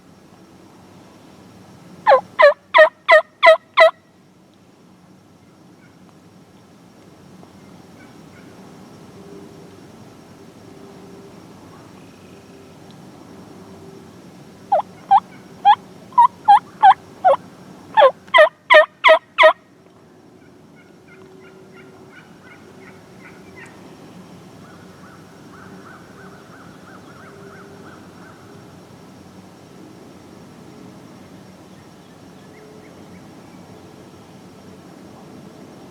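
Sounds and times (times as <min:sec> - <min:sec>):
turkey yelps: 0:02.1 - 0:03.9, 0:14.7 - 0:17.4, 0:18.0 - 0:19.5.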